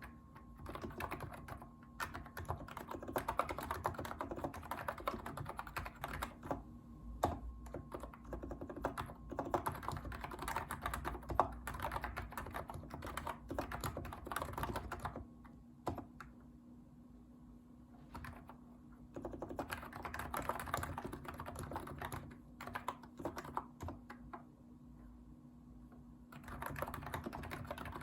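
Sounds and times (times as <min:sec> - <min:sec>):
keyboard typing: 0:00.0 - 0:06.6, 0:07.2 - 0:16.4, 0:18.0 - 0:24.4, 0:26.3 - 0:28.0.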